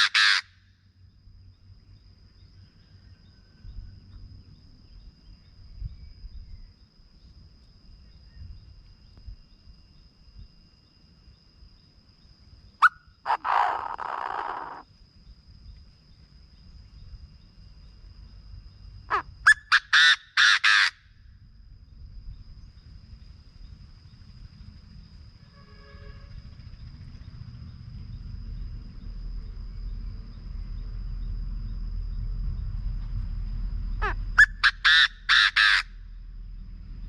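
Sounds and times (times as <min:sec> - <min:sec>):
francolin calling: 0:00.0 - 0:00.5, 0:12.8 - 0:14.8, 0:19.1 - 0:21.0, 0:33.9 - 0:36.0
faint low rumble: 0:00.9 - 0:12.8, 0:21.2 - 0:34.4, 0:35.9 - 0:37.0.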